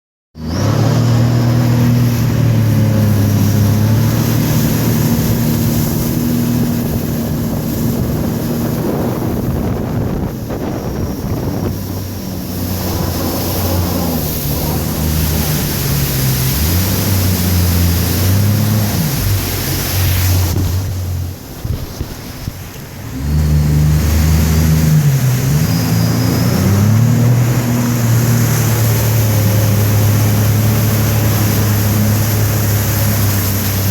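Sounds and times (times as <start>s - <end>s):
jet ski engine revving: 0.3s - 33.9s
wind on microphone: 0.6s - 33.9s
water hiss: 10.4s - 33.9s.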